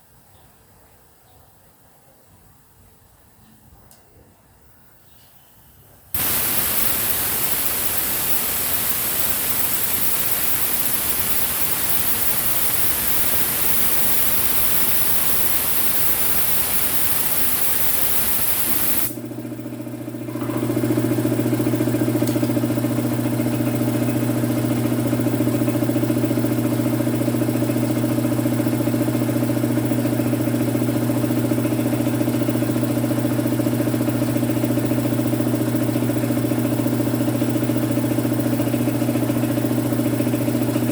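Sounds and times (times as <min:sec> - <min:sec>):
steady hiss: 0:05.1 - 0:19.2
electric compressor motor humming: 0:06.2 - 0:40.9.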